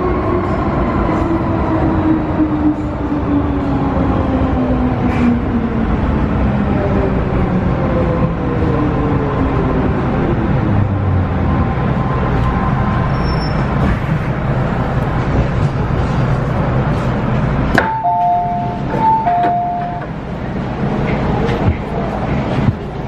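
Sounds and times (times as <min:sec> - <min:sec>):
metro train rumble: 0:00.0 - 0:23.0
two-note electronic chime: 0:17.8 - 0:20.0.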